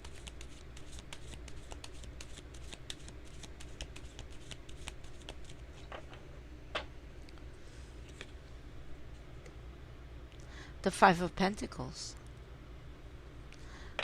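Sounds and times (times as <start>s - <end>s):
cards being shuffled: 0.0s - 6.3s.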